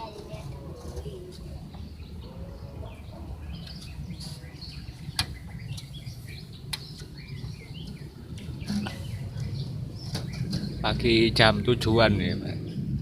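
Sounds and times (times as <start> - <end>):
steady low rumble: 0.0 - 13.0
lovebird chirping: 0.9 - 11.0.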